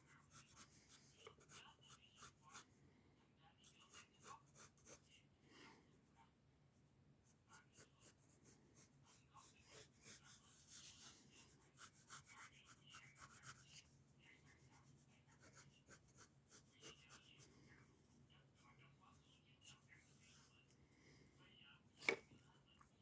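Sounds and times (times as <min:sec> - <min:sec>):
pencil scratching on paper: 0:00.0 - 0:02.7, 0:03.6 - 0:05.2, 0:07.2 - 0:20.6.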